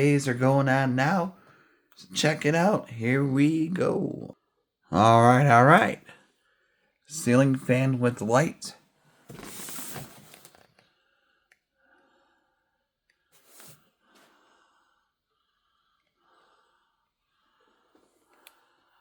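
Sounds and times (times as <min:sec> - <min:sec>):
faint handling clicks and rustles: 0:09.3 - 0:10.9.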